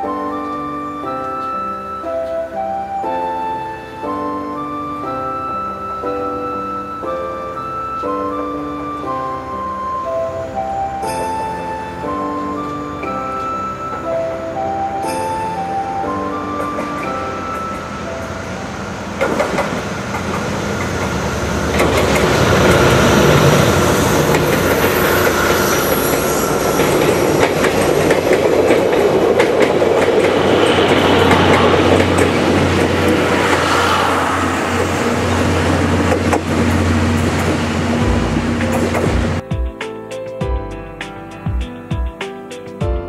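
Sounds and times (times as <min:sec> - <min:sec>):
diesel train rumbling past: 0:00.0 - 0:39.4
wheels clacking over rail joints: 0:12.2 - 0:39.4.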